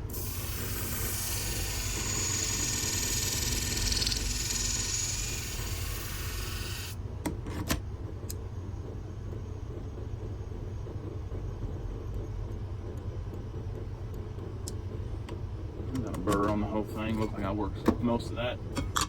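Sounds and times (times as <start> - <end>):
sharpening machine humming: 0.0 - 7.0
blade grinding hiss: 0.1 - 7.0.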